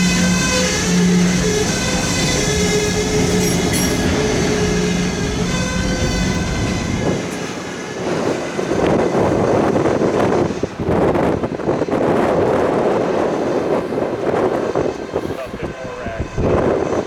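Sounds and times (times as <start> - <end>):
freight train wheels squealing: 0.0 - 10.5
rumble and clatter of wheels on rail: 0.0 - 17.0
wind on microphone: 0.0 - 17.0.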